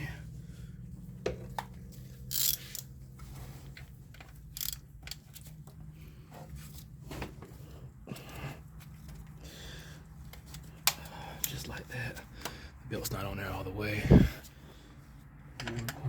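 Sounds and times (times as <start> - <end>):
rubber belt rustles and clicks: 1.4 - 9.4.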